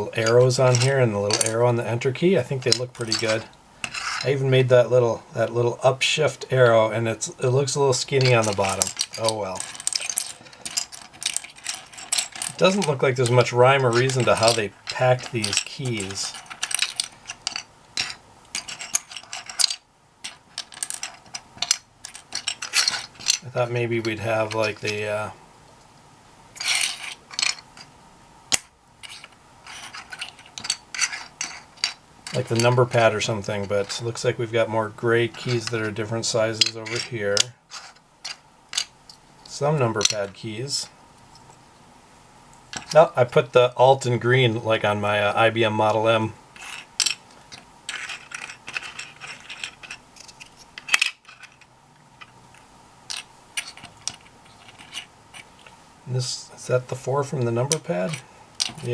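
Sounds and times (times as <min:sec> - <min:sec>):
plastic keycaps clattering: 0:08.2 - 0:12.9, 0:47.9 - 0:51.6.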